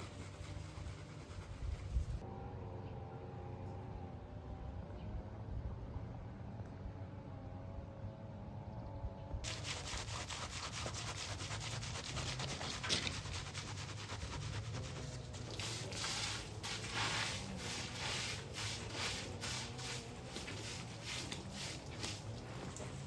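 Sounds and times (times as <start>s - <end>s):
hand tool scraping rough surface: 9.5s - 23.0s.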